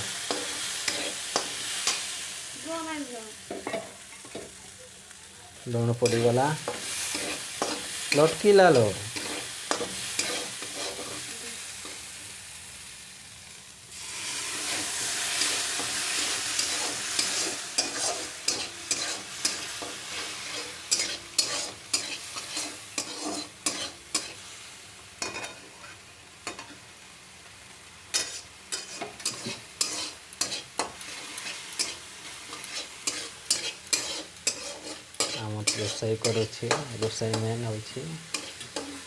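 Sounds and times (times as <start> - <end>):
food sizzling: 0.0 - 39.0
spoon scraping a cooking pot: 9.1 - 11.3, 16.6 - 19.6, 20.2 - 24.3, 28.2 - 36.8.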